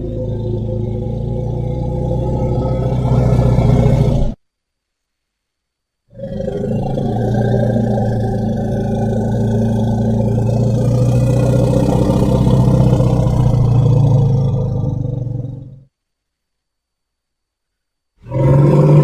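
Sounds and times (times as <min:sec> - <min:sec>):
low rough monster growl: 0:00.0 - 0:04.4, 0:06.1 - 0:15.9, 0:18.2 - 0:19.0.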